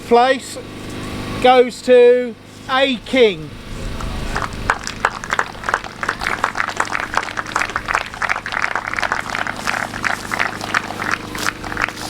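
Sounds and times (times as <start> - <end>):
group of people clapping: 4.0 - 12.0.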